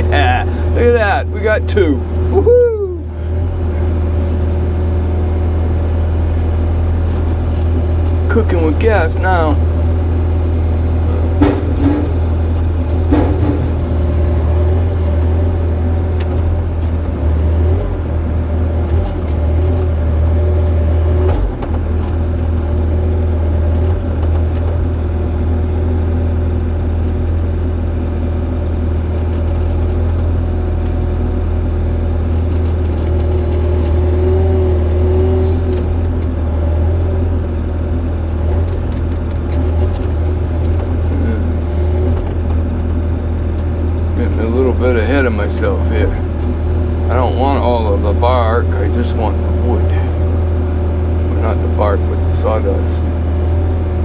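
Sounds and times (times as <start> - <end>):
excavator diesel engine running: 0.0 - 54.0
sharp knocks: 11.3 - 12.3.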